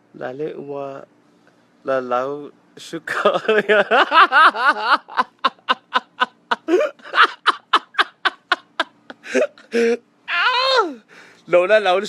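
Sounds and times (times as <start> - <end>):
person laughing: 3.3 - 10.0.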